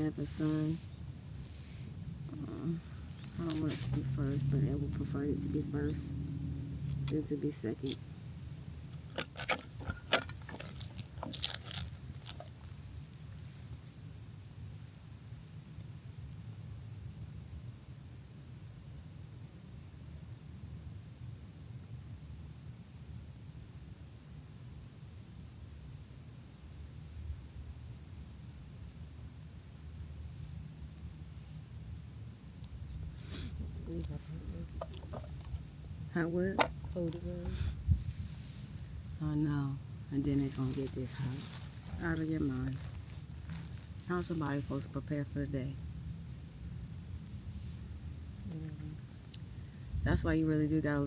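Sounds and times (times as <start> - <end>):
insects chirping: 0.0 - 51.0
low rumble: 0.8 - 9.1, 33.0 - 44.6.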